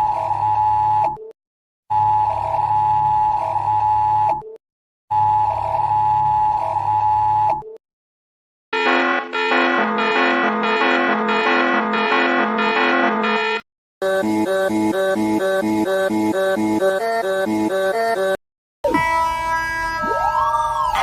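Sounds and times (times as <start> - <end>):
harsh two-tone alarm: 8.7 - 20.0
keyboard music: 8.8 - 20.0.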